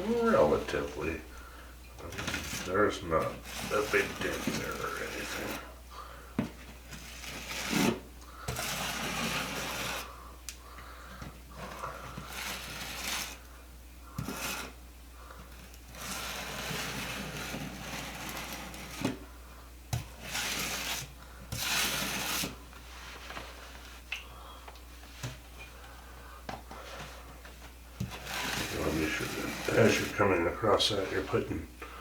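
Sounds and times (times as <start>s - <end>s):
putty knife scraping compound: 2.0s - 5.8s, 6.9s - 10.2s, 11.6s - 13.5s, 14.1s - 14.8s, 15.4s - 19.2s, 19.9s - 23.6s, 28.0s - 31.5s.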